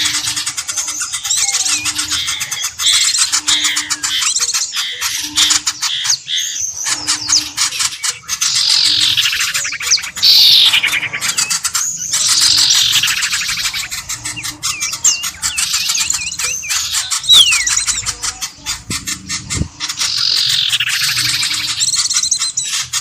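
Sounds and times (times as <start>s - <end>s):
small birds chattering and trilling: 0.0s - 23.0s
falling whistled bird notes: 8.4s - 18.1s.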